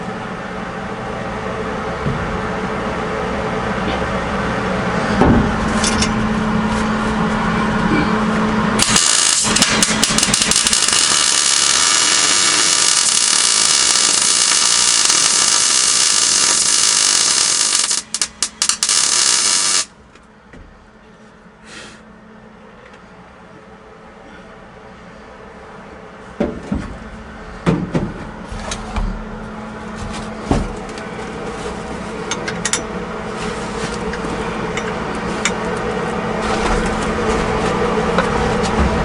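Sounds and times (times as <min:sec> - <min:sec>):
low rumble with steady hum: 0:00.0 - 0:39.0
electric welder arc crackling: 0:08.8 - 0:20.0.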